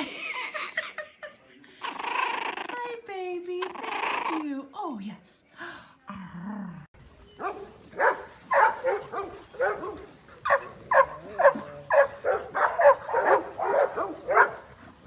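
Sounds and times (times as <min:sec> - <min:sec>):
dog barking: 0:07.4 - 0:14.7.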